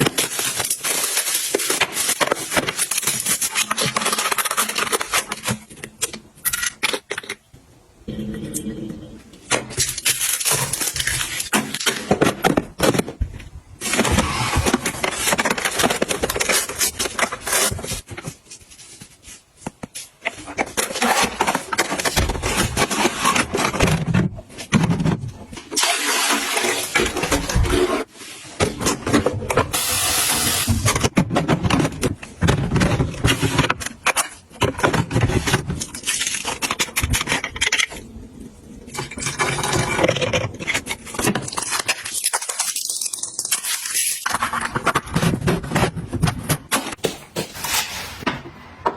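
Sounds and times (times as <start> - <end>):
packaging rustling: 0.0 - 6.1, 9.7 - 13.2
household items clacking and knocking: 0.0 - 18.5, 38.9 - 48.9.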